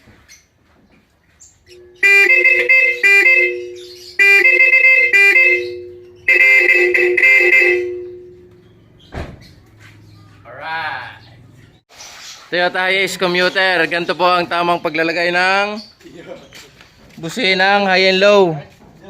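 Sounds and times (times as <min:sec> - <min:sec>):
two-tone vehicle horn blasts: 0:01.8 - 0:08.6.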